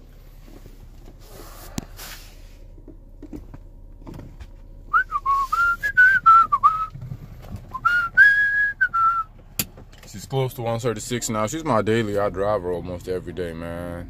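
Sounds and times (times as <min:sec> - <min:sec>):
person whistling a tune: 0:04.9 - 0:06.9, 0:07.7 - 0:09.3.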